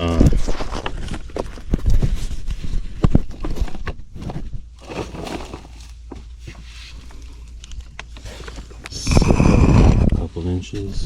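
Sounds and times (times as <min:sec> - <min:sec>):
soft shuffling: 0:01.7 - 0:09.0.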